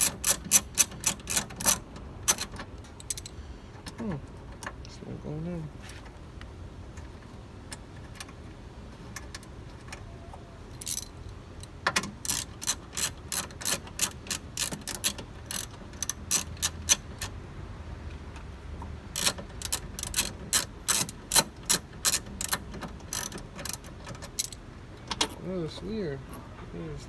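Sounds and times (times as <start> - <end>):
hand ratchet clicking: 0.0 - 3.3, 12.0 - 17.4, 19.1 - 24.6.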